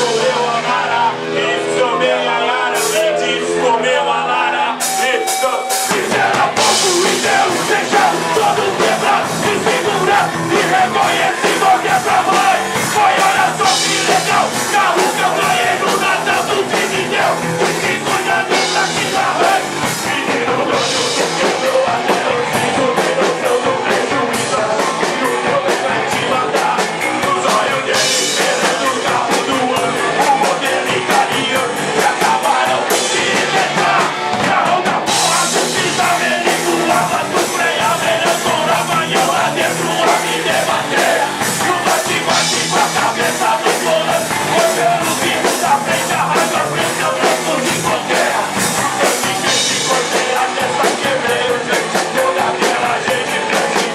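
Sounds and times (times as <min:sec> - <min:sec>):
person singing: 0:00.0 - 0:53.9
rock band playing live: 0:00.0 - 0:53.9.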